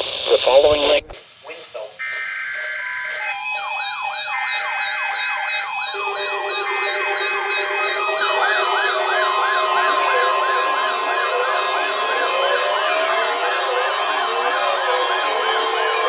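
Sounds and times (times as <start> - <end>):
siren-style alert alarms sweeping: 2.1 - 16.0
steady alert tones: 3.2 - 16.0.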